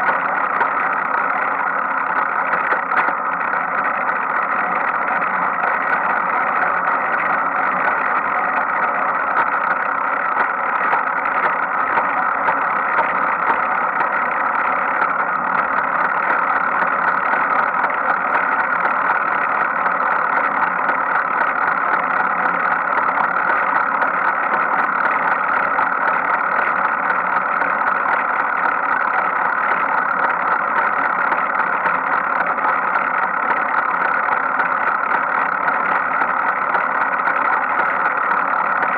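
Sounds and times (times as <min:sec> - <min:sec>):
bicycle drivetrain running: 0:00.0 - 0:38.9.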